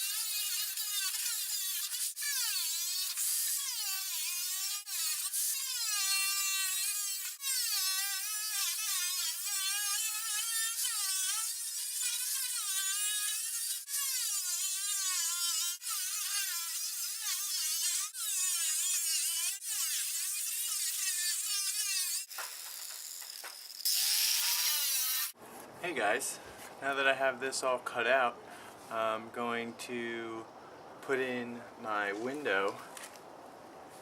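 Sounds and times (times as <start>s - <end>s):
angle grinder cutting metal: 0.0s - 25.4s.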